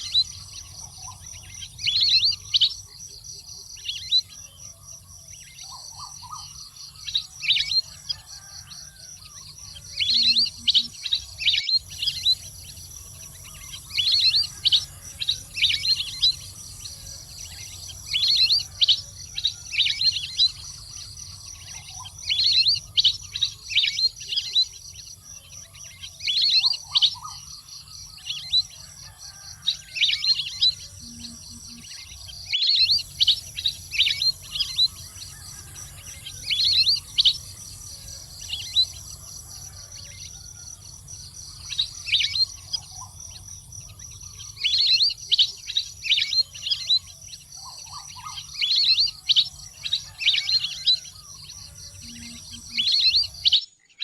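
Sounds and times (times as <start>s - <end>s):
steady low hum: 30.5s - 45.3s.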